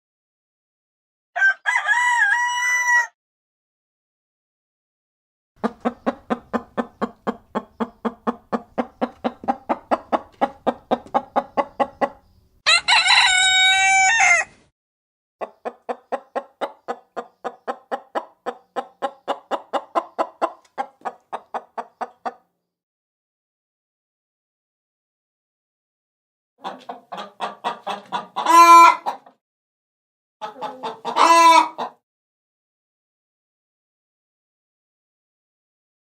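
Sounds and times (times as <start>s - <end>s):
rooster crowing: 1.4s - 3.2s, 12.6s - 14.6s
chicken clucking: 5.6s - 13.7s, 15.4s - 22.5s, 26.6s - 29.4s, 30.4s - 32.0s.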